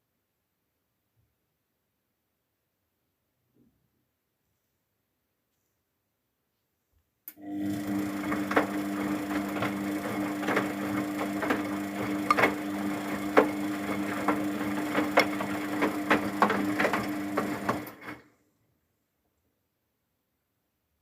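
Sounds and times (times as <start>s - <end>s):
washing machine motor hum: 7.3s - 18.3s.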